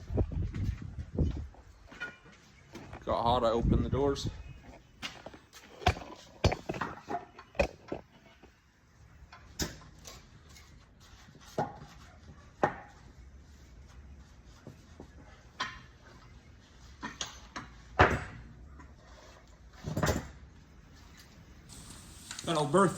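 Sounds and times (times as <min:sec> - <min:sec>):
tools and parts knocking: 0:05.1 - 0:08.5.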